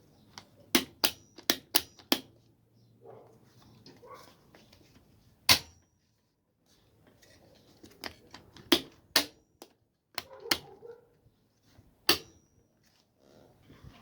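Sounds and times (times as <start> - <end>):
quiet handling of plastic parts: 0.0 - 14.0.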